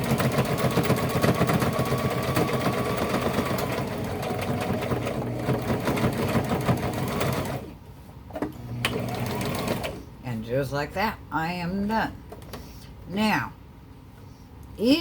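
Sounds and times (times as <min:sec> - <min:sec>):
sewing machine stitching: 0:00.0 - 0:07.8, 0:08.6 - 0:10.0.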